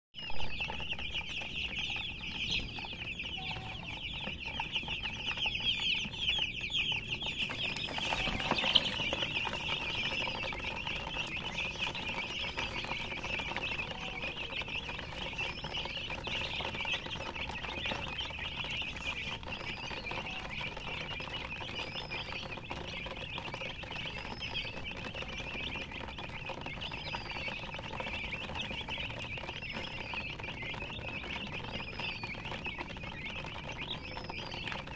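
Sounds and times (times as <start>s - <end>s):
higher arching chirp: 0.2s - 22.5s
chicks peeping: 0.2s - 34.9s.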